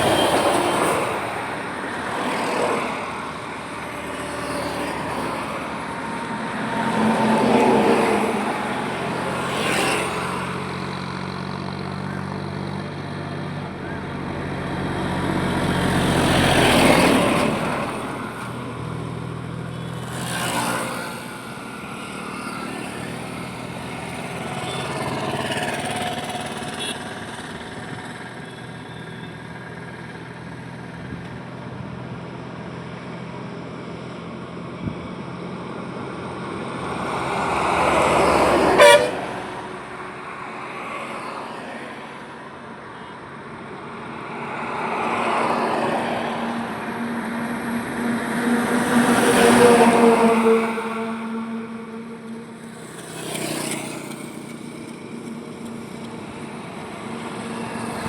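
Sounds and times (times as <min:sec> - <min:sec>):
vehicles passing on highway: 0:00.0 - 0:58.0
car horn toot: 0:38.6 - 0:39.6.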